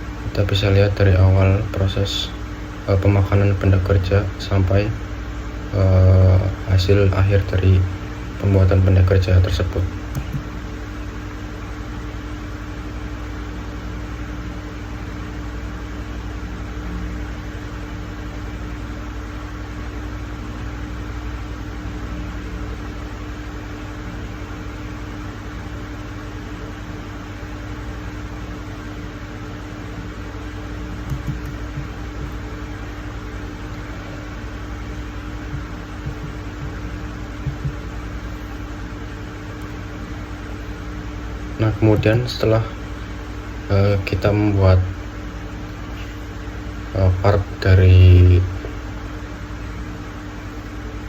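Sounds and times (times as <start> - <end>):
fan-like machine hum: 0.0 - 51.0.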